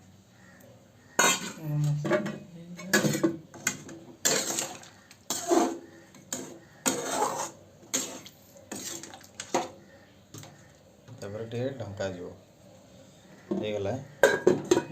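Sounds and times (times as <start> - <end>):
metal spoon scraping pot: 1.2 - 9.7.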